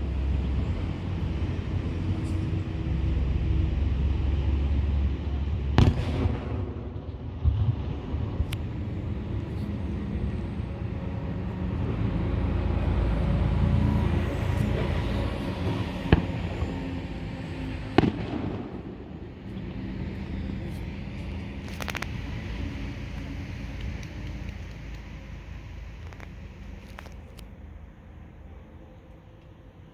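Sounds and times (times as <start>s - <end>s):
low rumble with faint hum: 0.0s - 29.9s
firework crackling: 2.8s - 27.4s
firework bangs: 5.4s - 11.3s, 15.6s - 19.9s.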